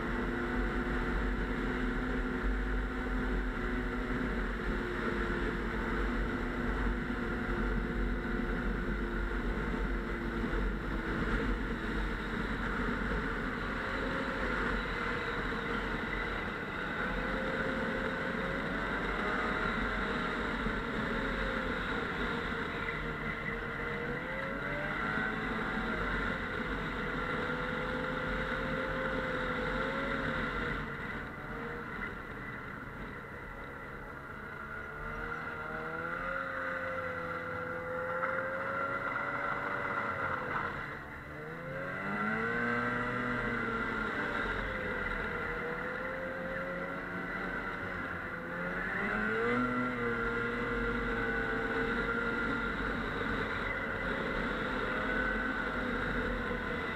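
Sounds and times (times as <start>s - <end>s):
snowmobile engine revving: 34.6s - 56.9s.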